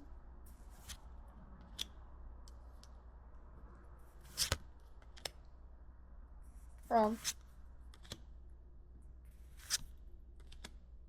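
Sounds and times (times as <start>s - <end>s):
faint low hum: 0.0s - 11.0s
cards being flipped: 0.7s - 1.0s, 4.2s - 5.4s, 7.2s - 8.2s, 9.4s - 10.8s.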